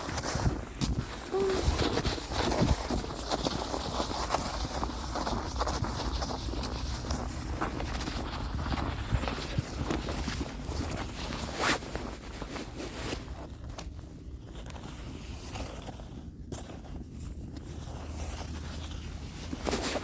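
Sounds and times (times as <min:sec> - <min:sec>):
footsteps crunching through snow: 0:00.0 - 0:20.0
steady low rumble: 0:00.5 - 0:11.2.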